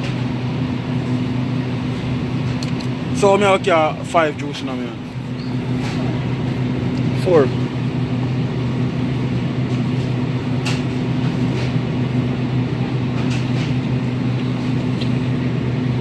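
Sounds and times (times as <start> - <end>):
low machine hum: 0.0 - 16.0.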